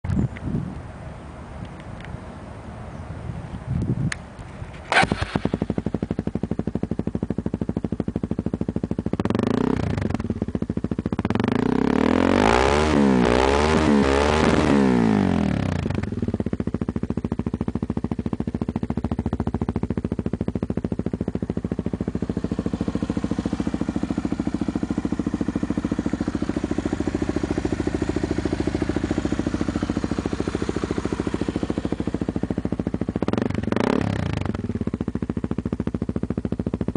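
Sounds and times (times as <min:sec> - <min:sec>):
motorcycle engine idling and revving: 0:00.0 - 0:36.9
motorcycle engine bang: 0:04.7 - 0:11.5, 0:15.8 - 0:36.9.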